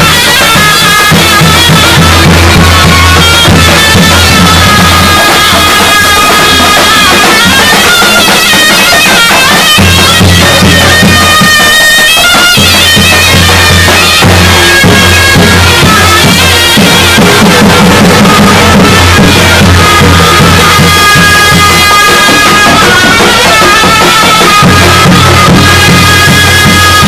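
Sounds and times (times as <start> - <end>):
bass drum beat: 0.0 - 5.8, 12.6 - 27.0
shawm wailing melody: 0.0 - 27.0.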